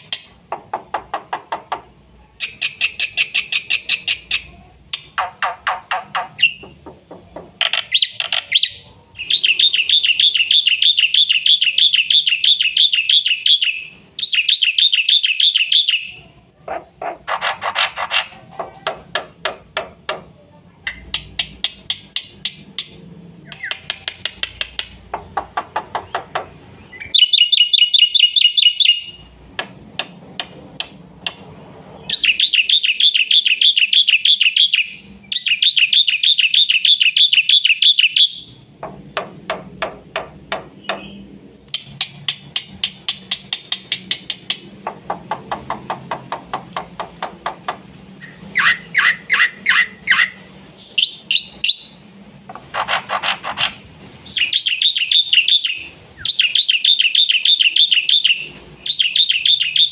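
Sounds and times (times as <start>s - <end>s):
bird singing: 0.0s - 19.6s, 20.8s - 29.4s, 32.0s - 38.7s, 48.2s - 52.0s, 52.8s - 59.9s.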